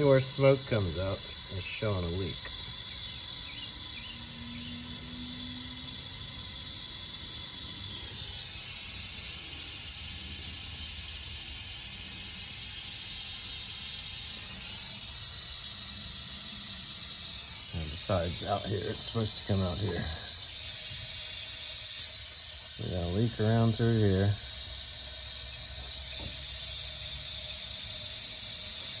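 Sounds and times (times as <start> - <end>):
compressed air hissing: 0.0 - 29.0.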